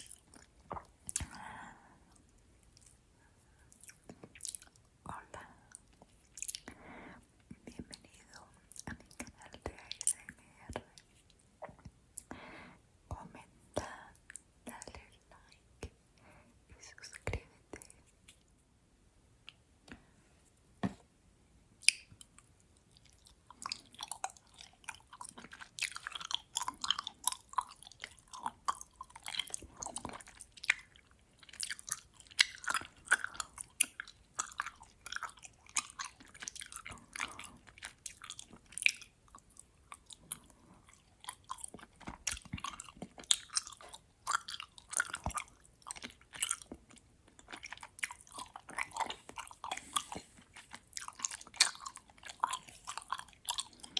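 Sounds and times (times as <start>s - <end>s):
chewing gummy sweets: 0.0s - 5.0s, 5.7s - 6.9s, 21.8s - 53.9s.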